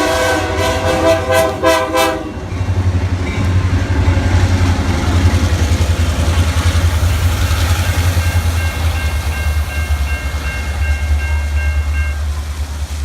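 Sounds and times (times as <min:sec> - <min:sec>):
freight train rumbling past: 0:00.0 - 0:13.0
heavy rain: 0:05.1 - 0:13.0
bell ringing: 0:08.1 - 0:12.3.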